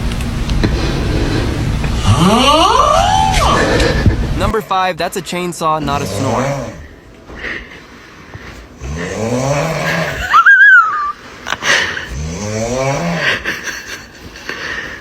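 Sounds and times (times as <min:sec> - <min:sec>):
high whistling squeal: 0:02.3 - 0:03.7
person snoring raspily: 0:05.8 - 0:07.0, 0:08.8 - 0:10.4, 0:11.8 - 0:13.4.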